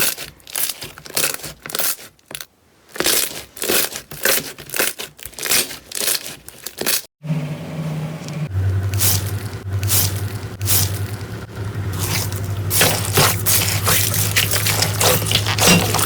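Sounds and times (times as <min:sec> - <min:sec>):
slime squishing: 0:00.0 - 0:07.0, 0:08.9 - 0:16.0
slime crackling and crinkling: 0:00.0 - 0:07.1, 0:11.9 - 0:16.0
steady low hum: 0:07.3 - 0:16.0.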